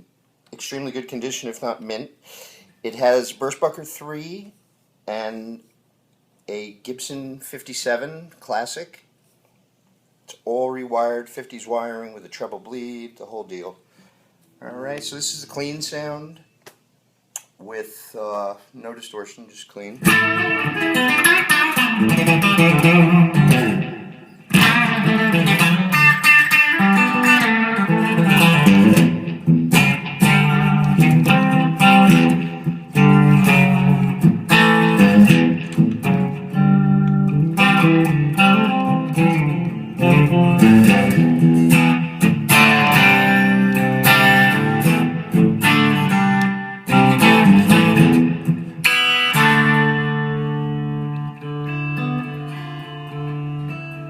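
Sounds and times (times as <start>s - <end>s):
clean electric guitar playing: 20.0s - 54.0s.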